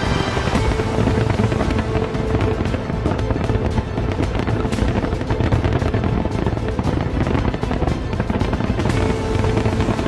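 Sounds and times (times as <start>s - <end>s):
fireworks bangs and crackling: 0.0s - 10.0s
loud music: 0.0s - 10.0s
low rumble: 0.0s - 10.0s.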